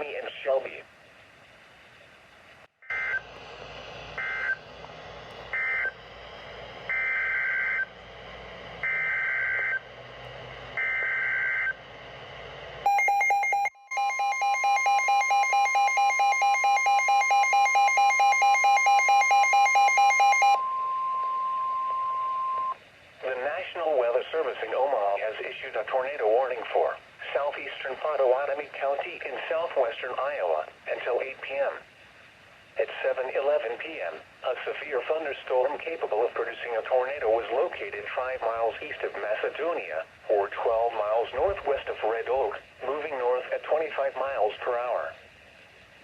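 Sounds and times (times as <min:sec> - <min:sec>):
rapid pulsing alarm beep: 0:12.9 - 0:22.8
steady warning alarm tone: 0:12.9 - 0:22.8.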